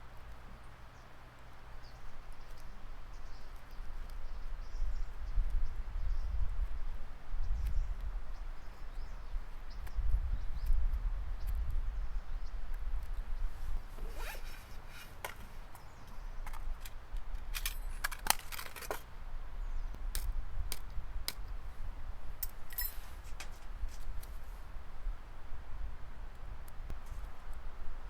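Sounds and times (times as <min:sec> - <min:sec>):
camping gear clicks and scrapes: 0:13.4 - 0:19.1, 0:22.4 - 0:24.5.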